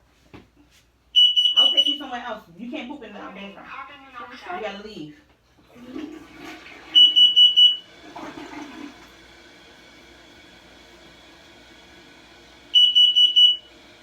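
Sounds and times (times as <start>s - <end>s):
high-pitched alarm beeps: 1.2s - 2.0s, 7.0s - 7.8s, 12.8s - 13.7s.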